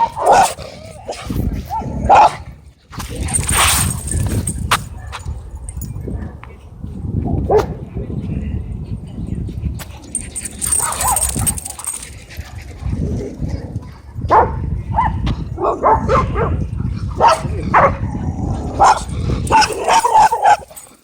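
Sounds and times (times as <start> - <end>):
dogs barking: 0.0 - 2.4, 10.2 - 12.1, 14.3 - 16.5, 17.2 - 18.0, 18.8 - 21.0.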